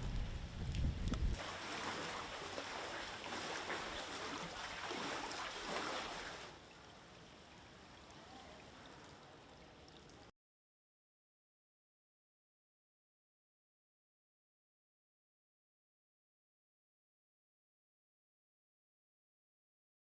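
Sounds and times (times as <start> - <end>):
floodwater sloshing and splashing: 1.4 - 10.2.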